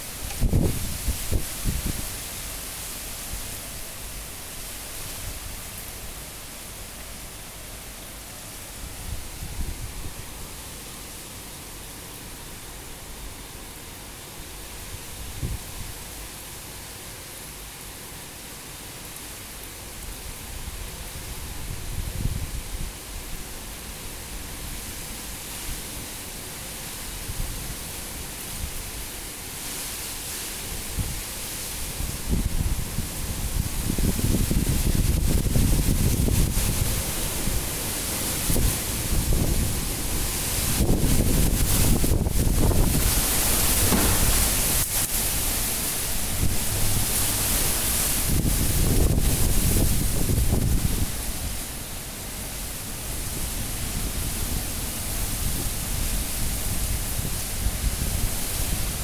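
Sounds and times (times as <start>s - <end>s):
low rumbling wind buffets: 0.0s - 2.6s, 30.8s - 59.0s
strong wind rushing and gusting: 0.2s - 2.1s, 38.4s - 51.5s.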